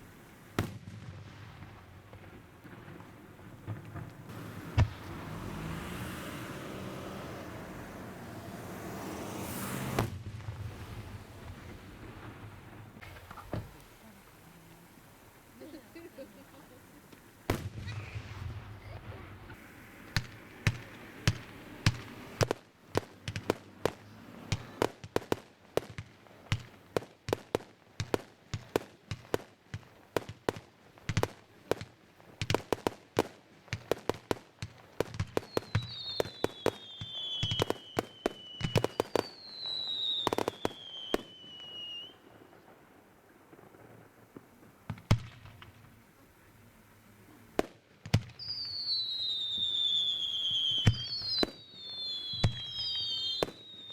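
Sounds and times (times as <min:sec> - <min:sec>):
fireworks cracks and bangs: 0:00.0 - 0:53.9
whistling fireworks falling whistles: 0:00.0 - 0:53.9.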